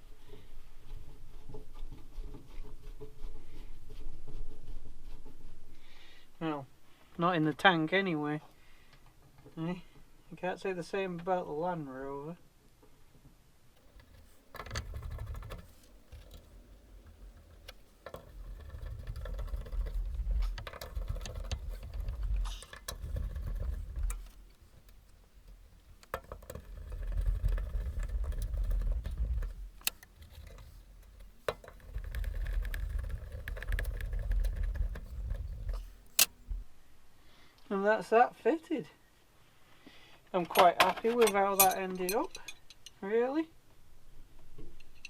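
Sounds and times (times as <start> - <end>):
clicks knocks and rattles of work: 13.8 - 36.7
low rumbling: 13.8 - 36.7.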